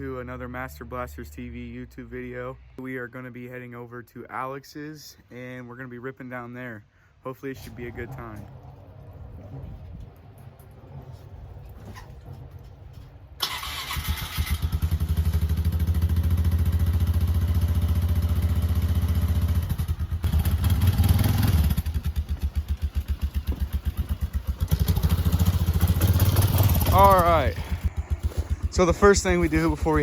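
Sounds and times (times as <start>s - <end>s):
motorcycle engine idling: 13.5s - 30.0s.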